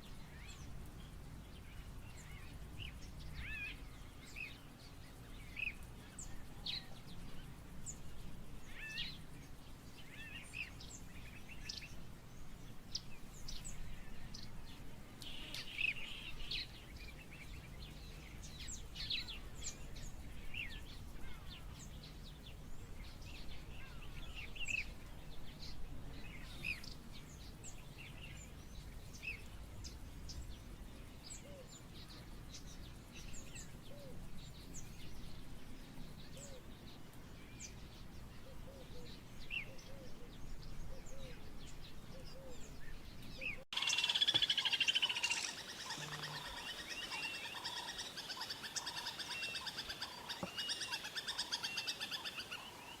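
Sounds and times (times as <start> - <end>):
high bird chirps: 43.7 - 53.0.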